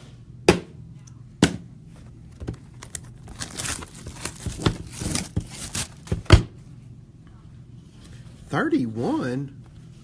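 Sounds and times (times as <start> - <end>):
wrapper tearing and crinkling: 2.6 - 6.2.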